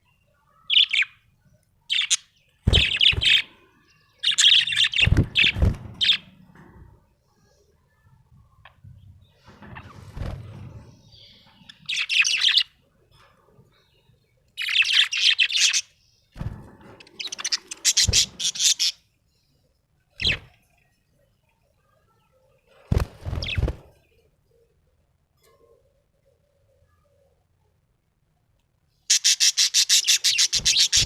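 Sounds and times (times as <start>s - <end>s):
budgerigar chirping: 29.1s - 31.0s.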